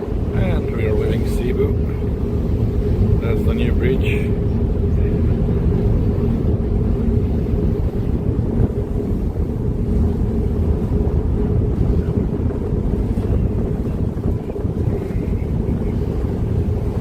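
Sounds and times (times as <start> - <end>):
ferry engine drone: 0.0 - 17.0
wind buffeting microphone: 0.0 - 17.0.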